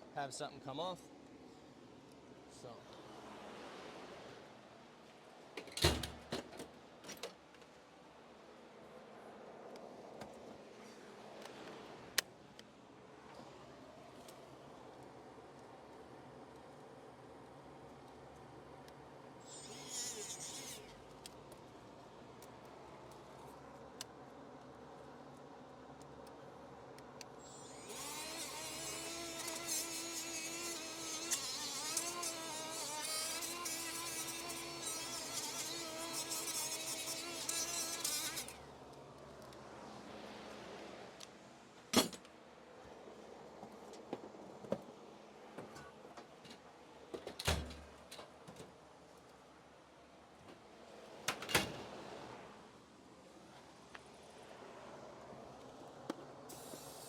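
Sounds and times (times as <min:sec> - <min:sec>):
small motor buzzing: 0:19.4 - 0:21.0, 0:27.4 - 0:38.6.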